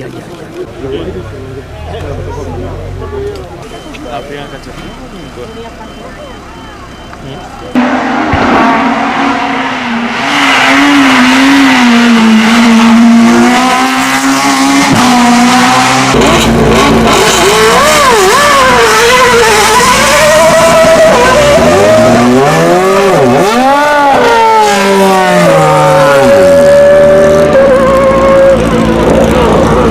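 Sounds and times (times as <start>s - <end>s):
race car engine revving: 7.7s - 29.9s.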